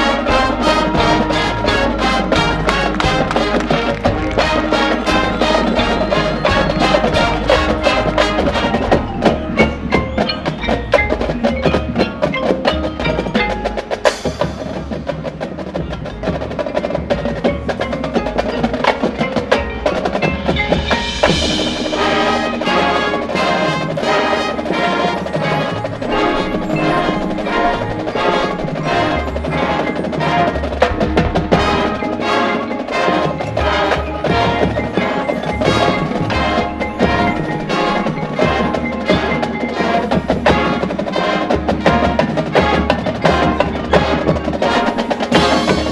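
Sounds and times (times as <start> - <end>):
chime-like bells: 0.0 - 45.9
drums: 0.0 - 45.9
mallet keyboards: 0.0 - 45.9
marching band playing: 0.0 - 45.9
woodblock strokes: 0.0 - 45.9.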